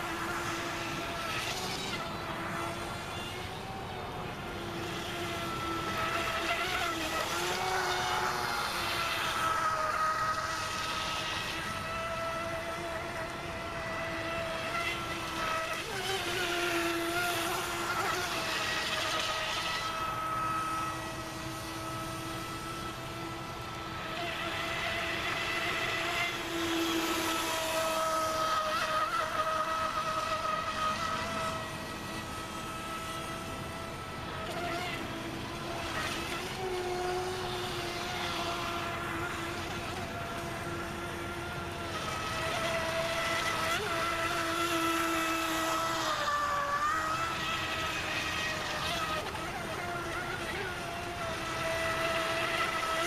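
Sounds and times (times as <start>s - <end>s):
electric motor high whine: 0.0s - 53.0s
water and spray hissing: 13.8s - 33.5s.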